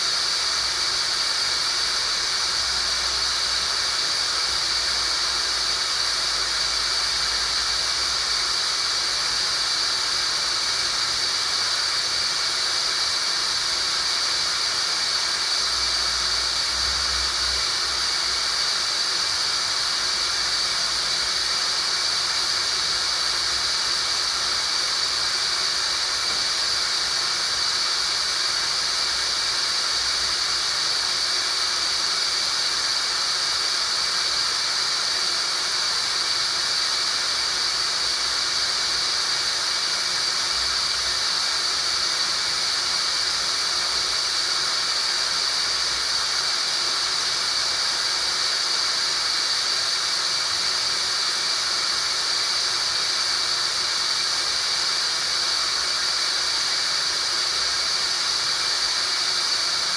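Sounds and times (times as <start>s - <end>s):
steady hiss with high-pitched tone: 0.0s - 59.9s.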